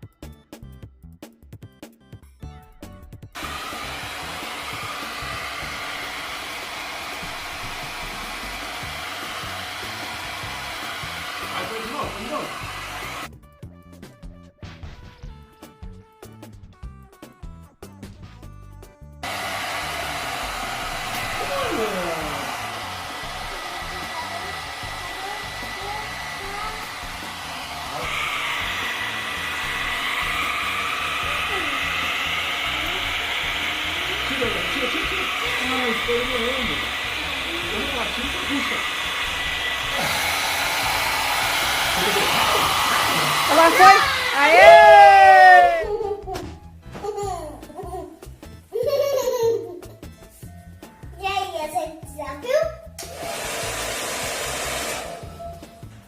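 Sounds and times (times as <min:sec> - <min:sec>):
hair dryer running: 0:03.4 - 0:13.3, 0:19.2 - 0:46.2, 0:53.0 - 0:56.0.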